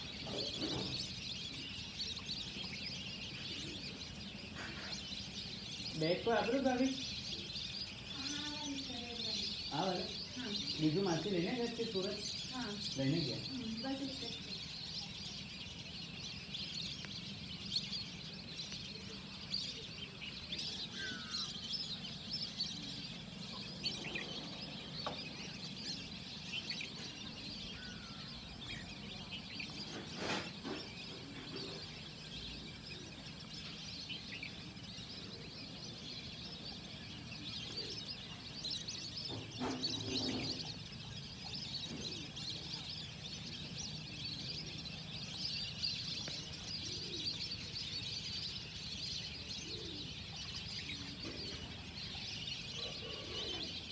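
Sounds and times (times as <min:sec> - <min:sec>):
small birds chirping: 0:00.0 - 0:53.9.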